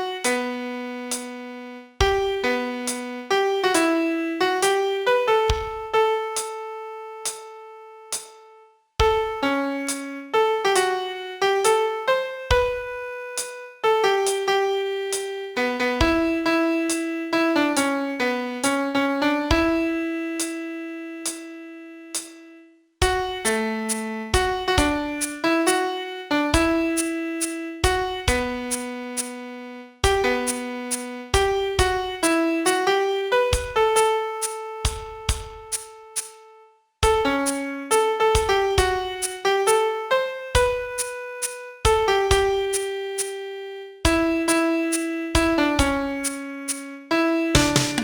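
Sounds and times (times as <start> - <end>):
piano playing slow melody: 0.0 - 48.0.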